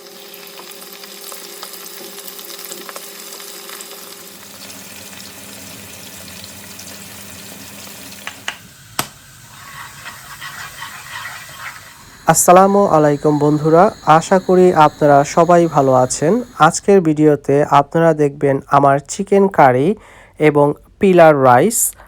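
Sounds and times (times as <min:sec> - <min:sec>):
food sizzling in oil: 0:00.0 - 0:16.9.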